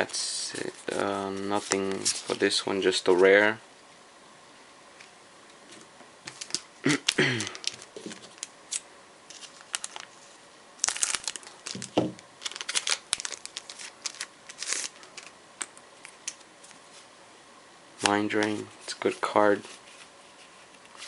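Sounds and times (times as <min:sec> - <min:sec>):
foil wrapper crinkling: 0:06.3 - 0:15.3
foil wrapper tearing: 0:06.4 - 0:10.2, 0:10.8 - 0:15.3.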